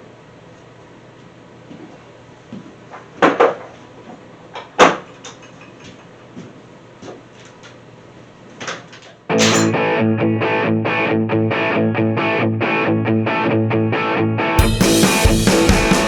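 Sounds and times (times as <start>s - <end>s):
distorted electric guitar riff: 9.3s - 16.0s
drums: 14.6s - 16.0s.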